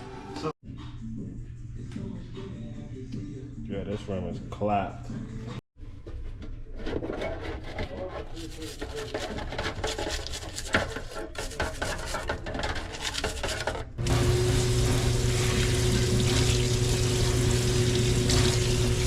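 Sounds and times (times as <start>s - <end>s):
rubbing and scraping on bicycle: 6.7s - 14.0s
machine hum with hiss: 14.0s - 19.0s.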